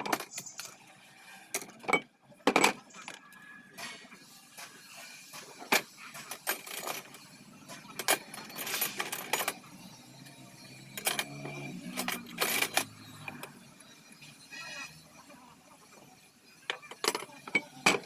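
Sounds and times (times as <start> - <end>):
metal parts clinking and knocking: 5.6 - 7.2, 7.8 - 9.7, 10.9 - 13.6, 16.6 - 18.0.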